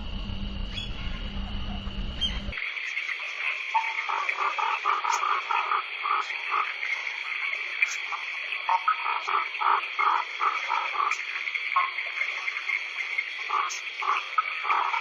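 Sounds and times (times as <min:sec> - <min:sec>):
frog croaking: 0:03.7 - 0:12.1, 0:13.3 - 0:15.0.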